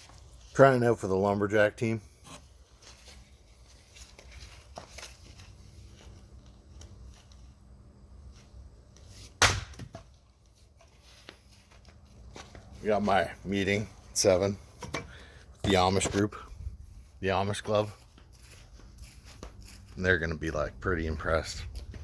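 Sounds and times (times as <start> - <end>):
axe striking wood: 9.4 - 10.1.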